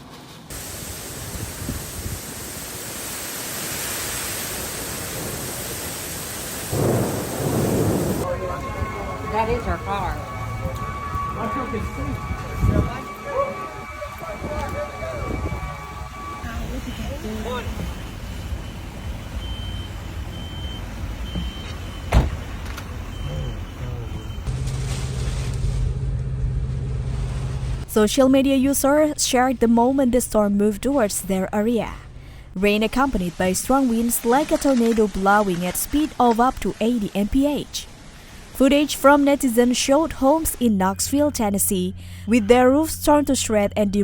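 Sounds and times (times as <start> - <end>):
heavy wind-driven rain: 0.5 - 20.3
high electronic beep: 8.2 - 22.1, 23.1 - 24.5.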